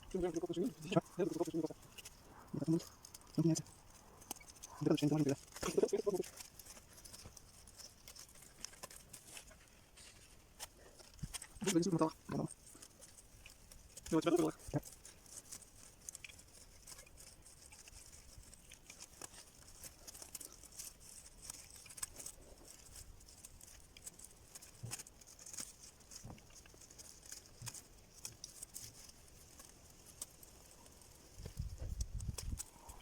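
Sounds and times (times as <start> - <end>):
small metal pieces ticking: 0.1 - 9.6, 10.6 - 33.0.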